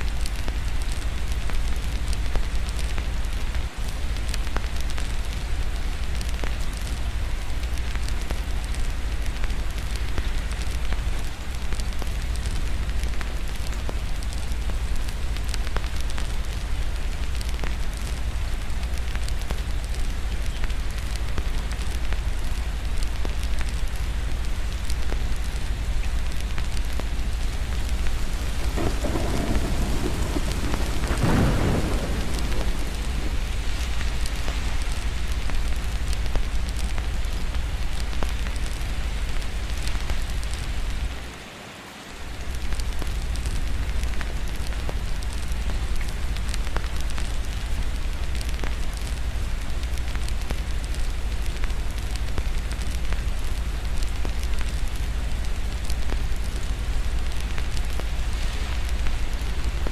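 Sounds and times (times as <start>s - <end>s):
steady rain: 0.0s - 59.9s
fireplace crackling: 9.2s - 41.3s
distant thunder rolling: 27.6s - 36.4s.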